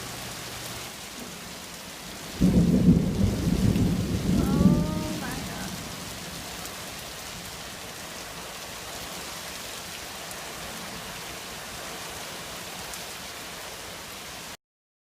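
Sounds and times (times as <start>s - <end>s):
heavy rain falling: 0.0s - 14.6s.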